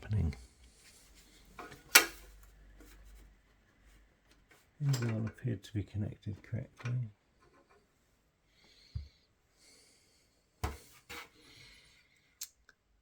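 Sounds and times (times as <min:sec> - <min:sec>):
soft rubbing and rustling: 0:00.2 - 0:05.2.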